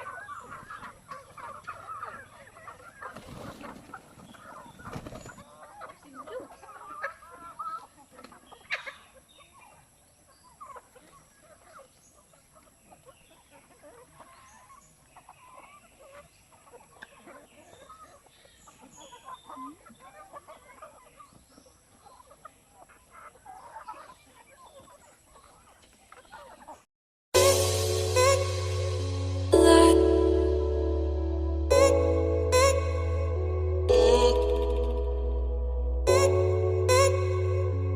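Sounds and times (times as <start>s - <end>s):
chickens clucking: 0.0s - 9.8s, 10.5s - 26.8s.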